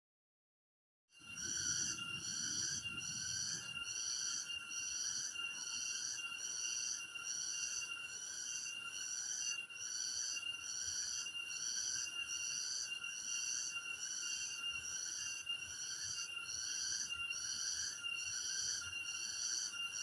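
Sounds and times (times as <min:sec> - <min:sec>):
insects buzzing: 0:01.2 - 0:20.0.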